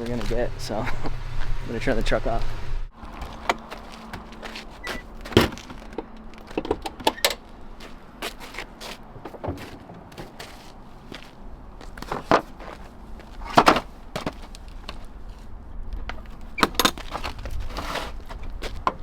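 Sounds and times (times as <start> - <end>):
knocks and thuds of handling: 3.2 - 7.2, 9.2 - 10.4, 12.0 - 12.6, 13.5 - 15.0.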